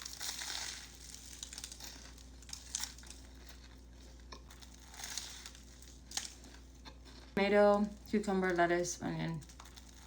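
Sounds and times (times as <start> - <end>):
paper wrapping crinkling: 0.0 - 3.9.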